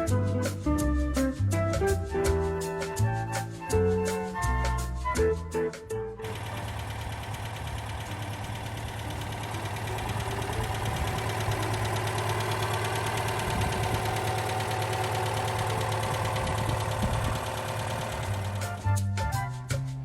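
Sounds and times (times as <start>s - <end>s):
car engine idling: 6.2s - 19.4s.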